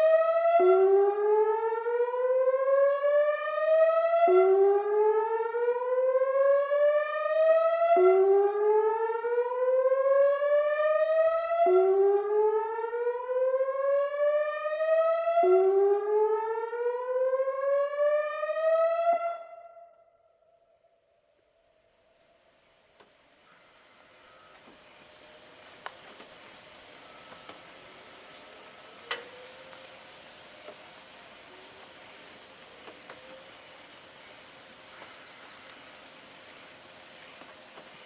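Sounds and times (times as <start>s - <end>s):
electronic siren whooping: 0.0s - 20.3s.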